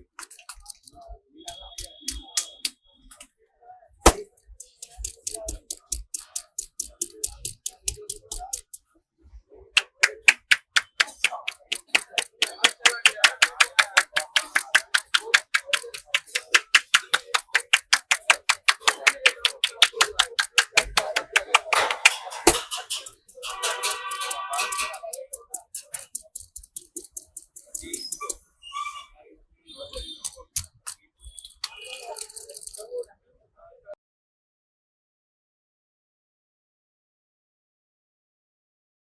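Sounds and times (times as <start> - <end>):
hands tapping a head: 9.8 - 28.4.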